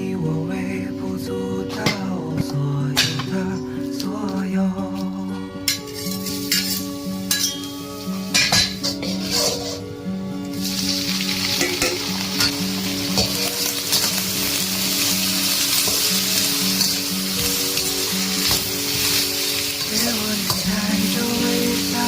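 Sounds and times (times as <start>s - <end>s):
soft background music: 0.0s - 22.0s
food sizzling in a pan: 5.7s - 22.0s.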